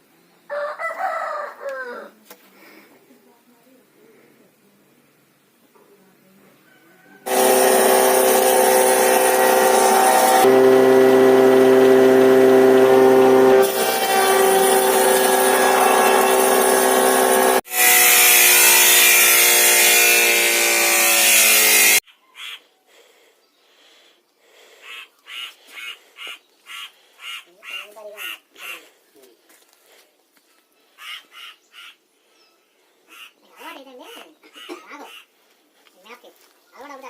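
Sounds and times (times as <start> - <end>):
woodworking power tool running: 7.3 - 22.0
bird calling: 22.1 - 22.8, 24.7 - 29.0, 30.8 - 32.0.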